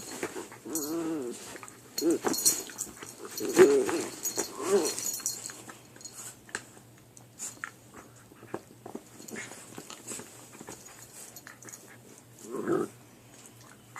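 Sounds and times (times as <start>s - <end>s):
puppies gnawing on a chew: 1.4s - 12.4s.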